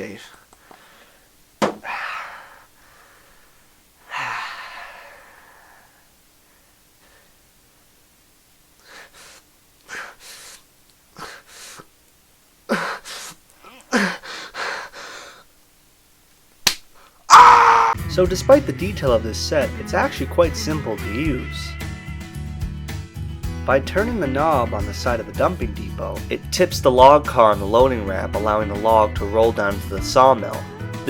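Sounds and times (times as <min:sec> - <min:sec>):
man gasping and crying out: 0:01.8 - 0:02.7, 0:04.0 - 0:06.0, 0:12.7 - 0:15.5, 0:17.3 - 0:18.0.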